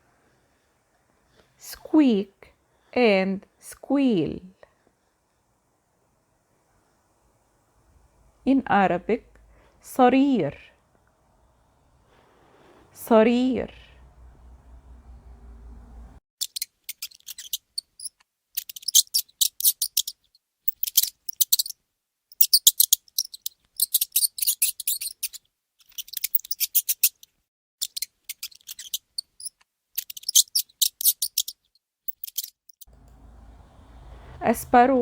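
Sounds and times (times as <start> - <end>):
mouse squeaking: 16.4 - 21.7, 22.4 - 32.8.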